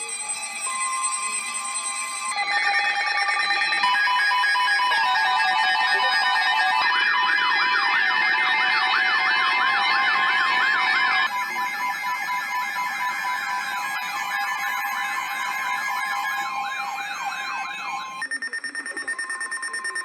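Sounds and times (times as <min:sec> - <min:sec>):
siren-like warble: 0:00.0 - 0:18.2
pulsed beeps: 0:00.0 - 0:20.0
steady electronic tone: 0:04.6 - 0:18.2
buzzing tone: 0:05.0 - 0:18.2.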